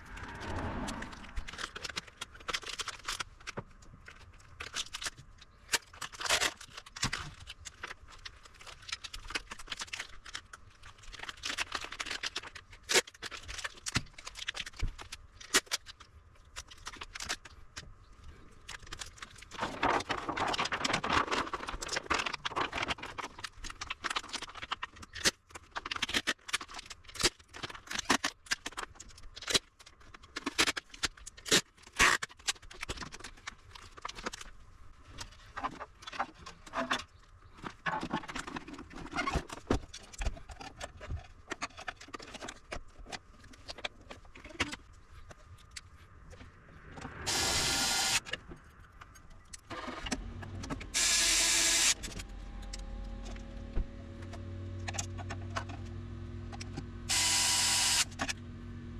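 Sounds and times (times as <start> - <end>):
whirring noise: 0.0 - 1.8, 46.9 - 48.4, 49.7 - 54.4.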